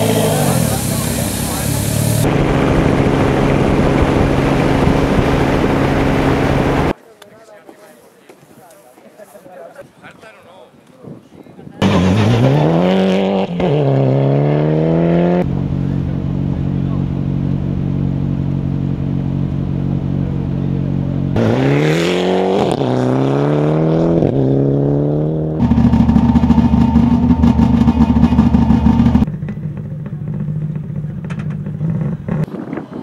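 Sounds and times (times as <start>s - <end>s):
rally car engine revving: 0.0s - 6.9s, 11.8s - 32.5s.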